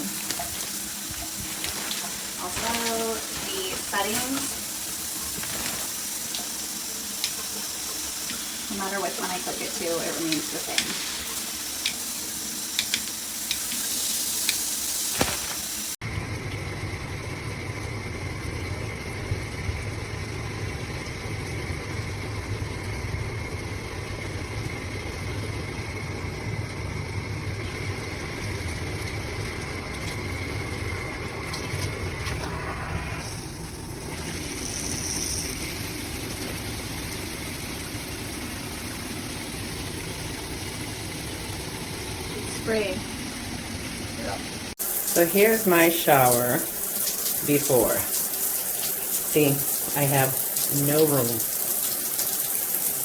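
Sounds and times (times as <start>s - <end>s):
running water rumble: 0.0s - 13.8s, 15.1s - 53.0s
shower spray hissing: 0.0s - 16.0s, 34.3s - 36.0s, 44.8s - 53.0s
thin whine: 29.1s - 36.5s.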